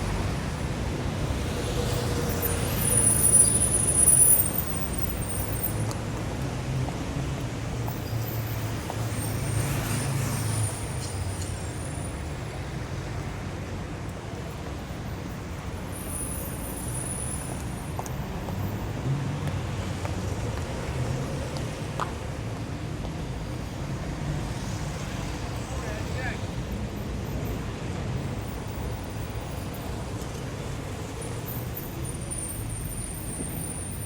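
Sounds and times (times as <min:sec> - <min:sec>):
vehicles passing: 0:00.0 - 0:34.0
high brake squeals: 0:02.0 - 0:05.8, 0:07.9 - 0:12.5, 0:15.9 - 0:18.2, 0:31.2 - 0:34.0.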